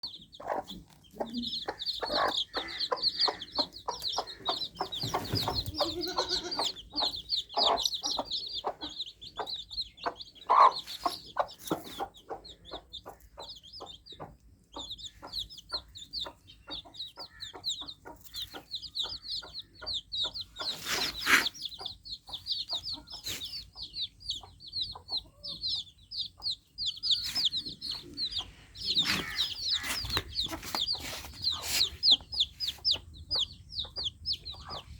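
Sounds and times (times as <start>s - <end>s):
baby chicks peeping: 0.0s - 34.9s.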